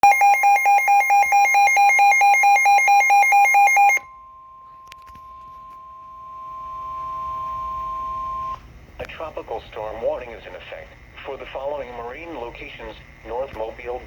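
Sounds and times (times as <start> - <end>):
faint steady single tone: 3.8 - 8.6.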